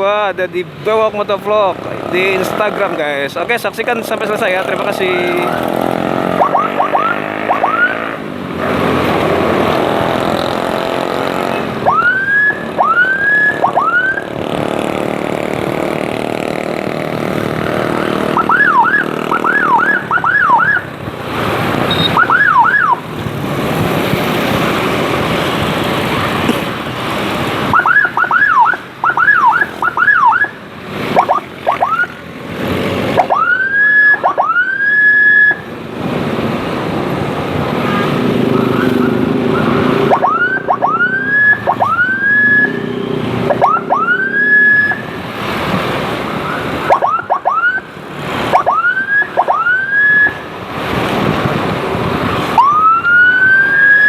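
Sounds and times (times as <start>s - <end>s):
motorcycle riding noise: 0.0s - 54.0s
motorcycle siren whoops and yelps: 4.8s - 8.3s, 11.5s - 14.4s, 17.5s - 21.1s, 21.9s - 23.2s, 27.6s - 32.2s, 33.1s - 35.7s, 38.4s - 50.6s, 52.1s - 54.0s.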